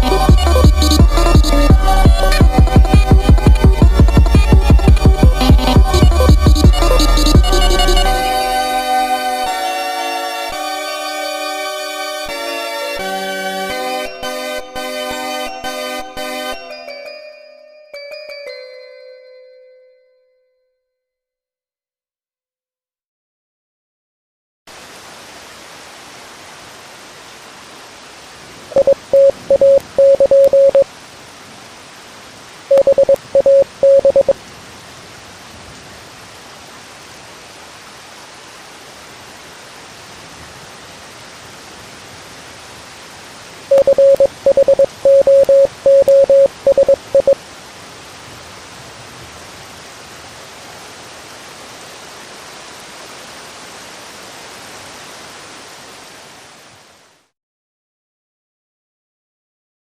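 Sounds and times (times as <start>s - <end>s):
radio static hiss: 28.7s - 30.9s
morse code beeps: 28.8s - 30.9s, 32.7s - 34.4s, 43.7s - 47.4s.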